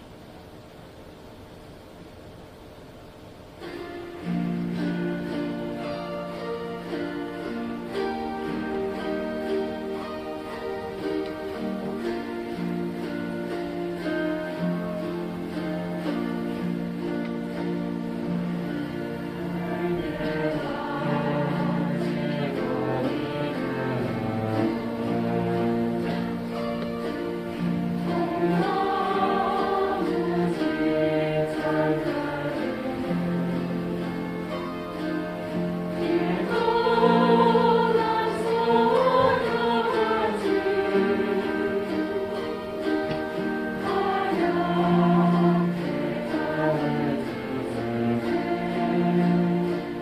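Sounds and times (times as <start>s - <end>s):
chromaharps strumming: 0.0s - 50.0s
group singing: 18.5s - 34.4s, 35.8s - 50.0s.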